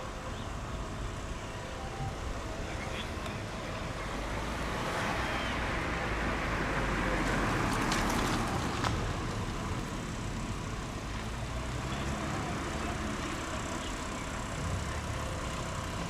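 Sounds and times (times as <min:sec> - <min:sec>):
low engine rumble: 0:00.0 - 0:16.0
vehicle passing by: 0:03.8 - 0:16.0.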